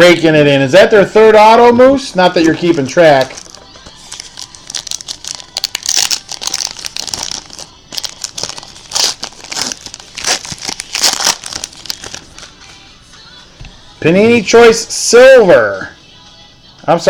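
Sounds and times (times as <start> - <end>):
plastic wrappers crinkling: 2.2 - 12.9.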